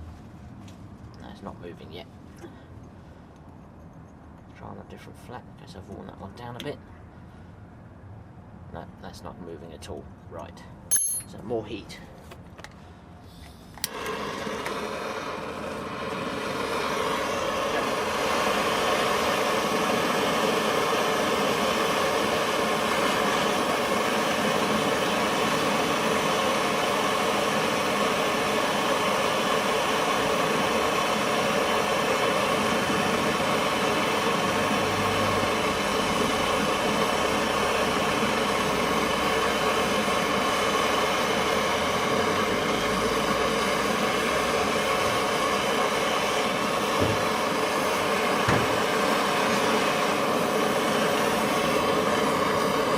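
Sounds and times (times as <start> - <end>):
blowtorch ignition click: 13.4 - 39.1, 42.0 - 52.9
blowtorch flame hissing: 13.6 - 52.9.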